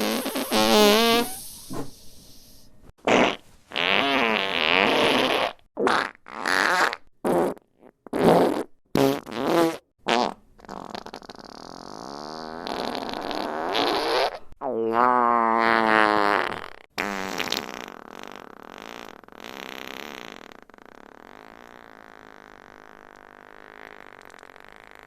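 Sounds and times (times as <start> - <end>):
fart sound effects: 0.0 - 2.0, 3.0 - 25.0.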